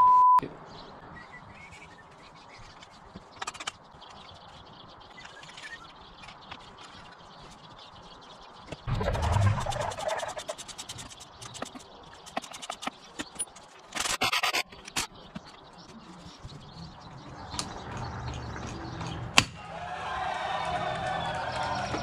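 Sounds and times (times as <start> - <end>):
loud rasping burst: 8.9 - 11.1.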